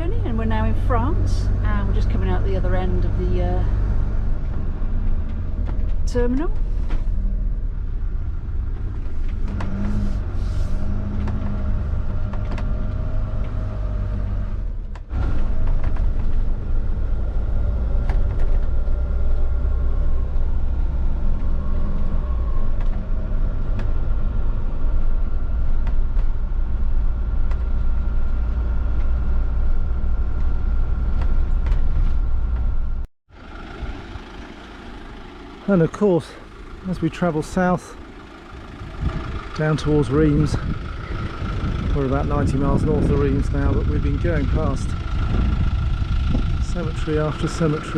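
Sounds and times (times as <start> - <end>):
vehicle road and engine rumble: 0.0 - 47.9.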